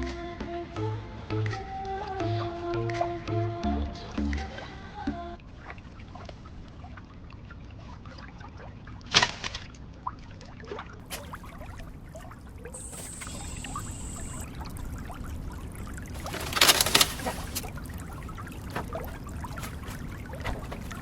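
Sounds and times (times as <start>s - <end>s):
water trickling: 11.0s - 21.0s
thin high steady tone: 12.7s - 14.5s.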